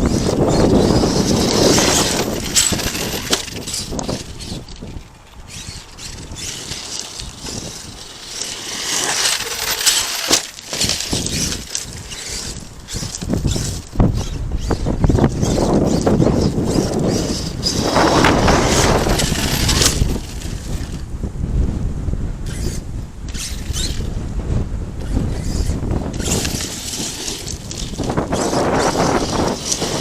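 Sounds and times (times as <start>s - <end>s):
tyres crunching on gravel: 0.0s - 14.4s, 15.1s - 21.0s, 25.0s - 30.0s
stones clattering: 6.6s - 13.3s.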